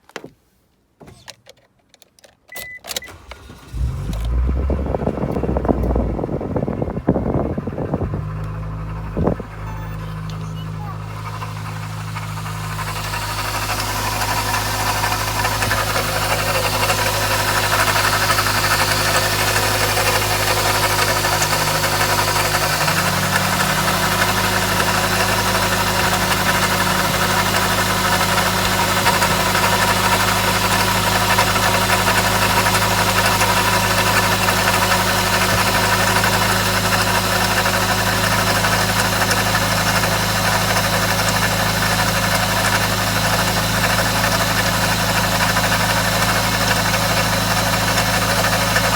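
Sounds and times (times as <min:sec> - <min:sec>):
engine idling with rattle: 0:03.0 - 0:48.9.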